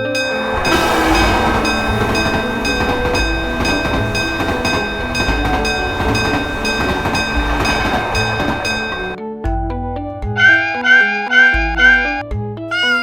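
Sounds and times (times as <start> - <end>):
train passing: 0.0 - 9.2
background music: 0.0 - 13.0.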